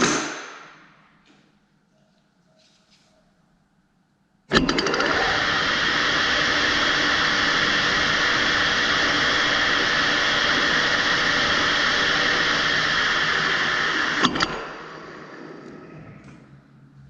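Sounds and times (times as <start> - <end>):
lathe running with whine: 4.5 - 17.0.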